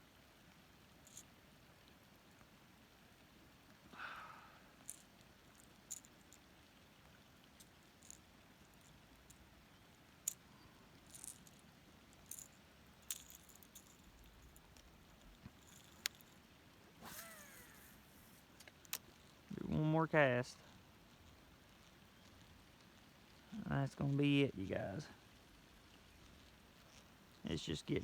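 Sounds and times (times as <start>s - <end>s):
fishing tackle clicking and rattling: 1.0s - 1.3s, 4.8s - 6.5s, 7.4s - 9.5s, 10.2s - 19.3s
soft rustle: 4.6s - 19.5s, 20.5s - 28.0s.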